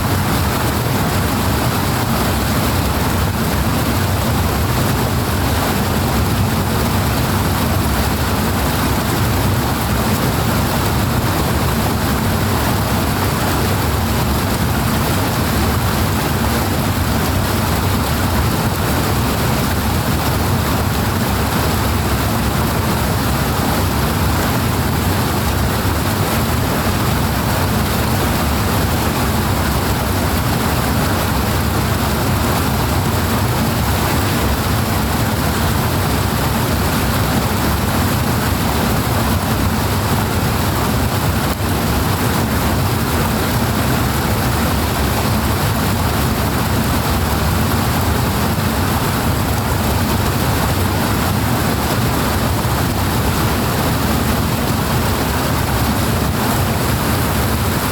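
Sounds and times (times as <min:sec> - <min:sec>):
water rushing: 0:00.0 - 0:57.9.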